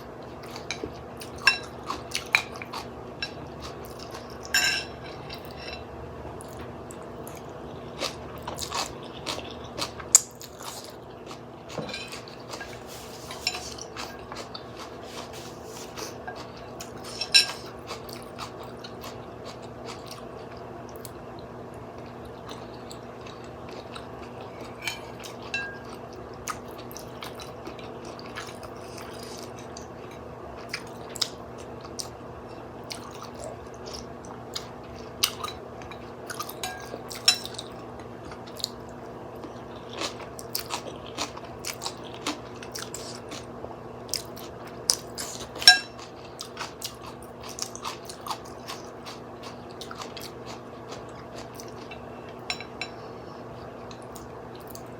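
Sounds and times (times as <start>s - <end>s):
faint steady hum: 0.0s - 54.9s
person chewing: 0.4s - 5.7s, 6.4s - 43.5s, 44.1s - 54.9s
utensils clinking against bowl: 4.4s - 5.9s, 11.7s - 14.5s, 16.3s - 17.7s, 24.7s - 26.0s, 35.3s - 37.7s, 45.6s - 46.1s, 52.4s - 53.0s.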